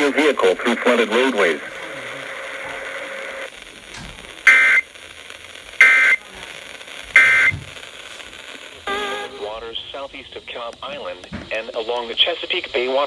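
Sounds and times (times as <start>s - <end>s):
faint radio hiss: 0.0s - 13.0s
digital data tone bursts: 4.4s - 4.9s, 7.2s - 7.7s.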